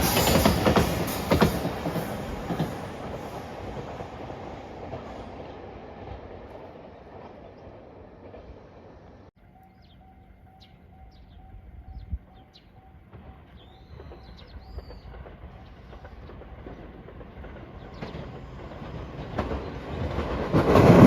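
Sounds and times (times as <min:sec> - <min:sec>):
low train rumble: 0:00.0 - 0:21.0
train running on rails: 0:00.0 - 0:21.0
faint level crossing bell: 0:09.4 - 0:13.4
birds chirping: 0:09.4 - 0:20.2.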